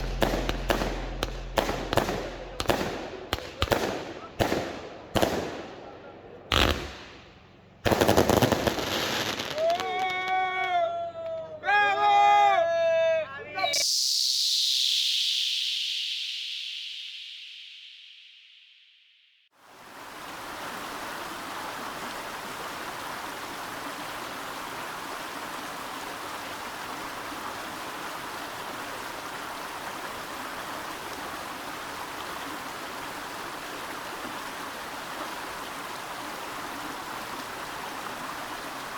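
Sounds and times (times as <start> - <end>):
steady rushing noise: 0.0 - 4.3.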